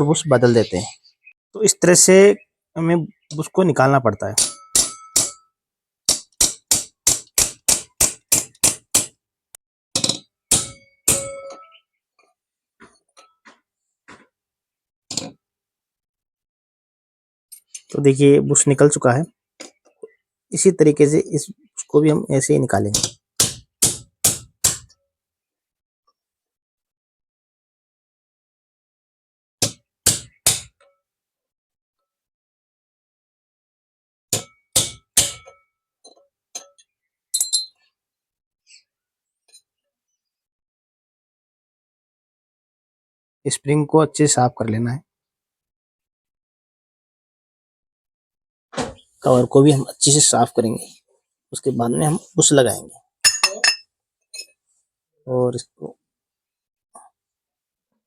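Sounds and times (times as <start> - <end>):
metal striking metal: 4.3 - 5.5, 10.0 - 11.8
sharp metal knocks: 4.3 - 5.5, 6.1 - 9.2, 10.0 - 11.8, 34.3 - 35.6.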